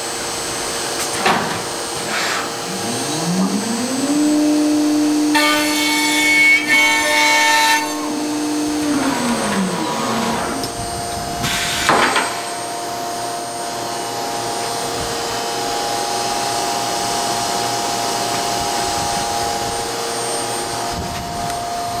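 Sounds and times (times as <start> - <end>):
high machine whine: 0.0 - 22.0
steady machine drone: 0.0 - 22.0
spindle tone sliding down: 2.5 - 5.5, 7.8 - 11.5.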